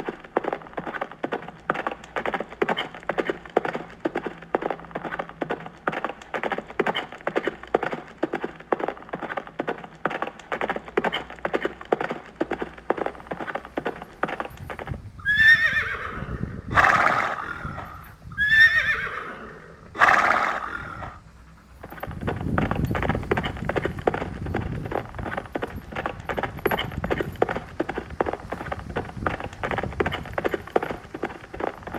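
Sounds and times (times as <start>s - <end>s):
horse hooves clip-clopping: 0.0s - 31.9s
horse neighing: 15.2s - 21.3s.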